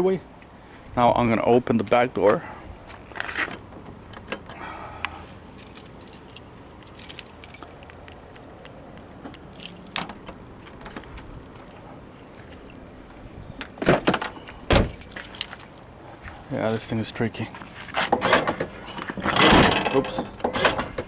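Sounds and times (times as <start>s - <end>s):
keys jangling: 5.6s - 15.8s.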